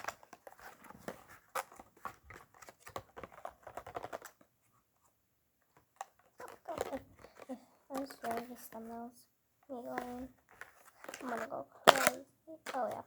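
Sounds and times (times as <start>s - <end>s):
plastic packaging crinkling: 6.0s - 8.8s, 9.7s - 13.0s.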